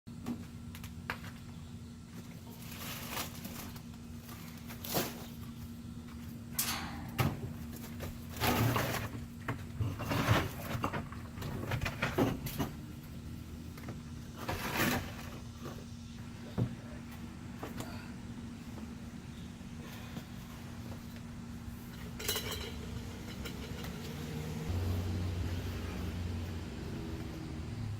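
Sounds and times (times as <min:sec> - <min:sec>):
steady low hum: 0:00.1 - 0:27.9
objects knocking and scraping: 0:06.6 - 0:12.9, 0:13.8 - 0:15.9, 0:21.9 - 0:24.6.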